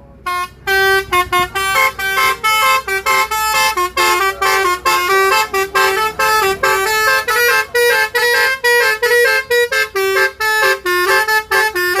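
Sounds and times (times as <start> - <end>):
multi-tone musical car horn: 0.2 - 12.0.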